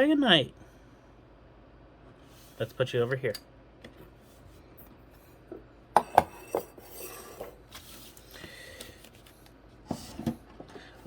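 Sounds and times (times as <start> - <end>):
clinks and knocks on table: 6.0 - 7.6.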